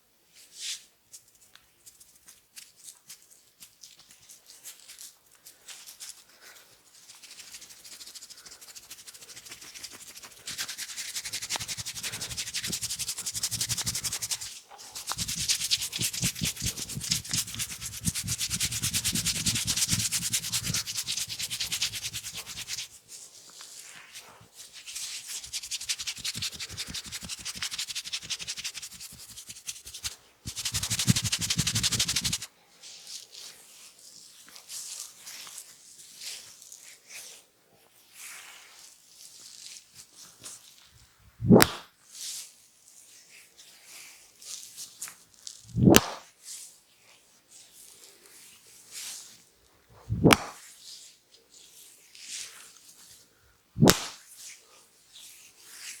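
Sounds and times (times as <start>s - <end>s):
oiled hands rubbing skin: 2.6s - 32.5s, 53.8s - 54.1s.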